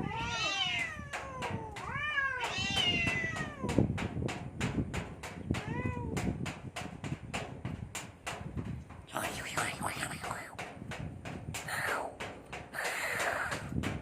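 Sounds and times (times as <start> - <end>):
cats yowling: 0.0 - 3.8.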